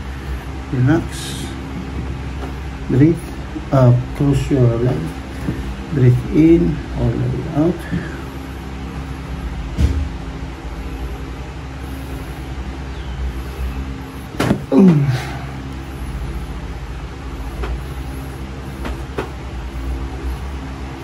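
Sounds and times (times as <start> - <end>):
steady low hum: 0.0 - 21.0
person groaning: 14.4 - 15.6.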